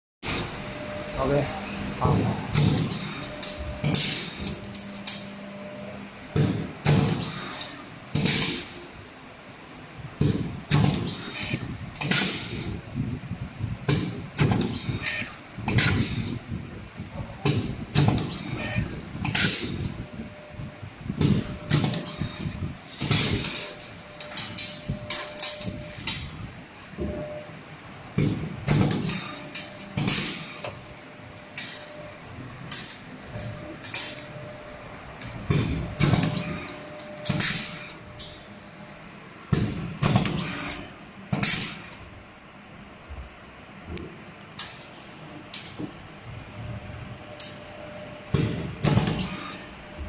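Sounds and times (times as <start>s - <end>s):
labeling machine hissing and clacking: 2.0s - 5.4s, 6.4s - 8.8s, 10.2s - 12.8s, 13.9s - 16.4s, 21.2s - 26.4s, 28.2s - 31.9s, 39.6s - 42.0s
labeling machine clunks: 13.9s - 16.4s, 21.2s - 26.4s, 28.2s - 30.8s.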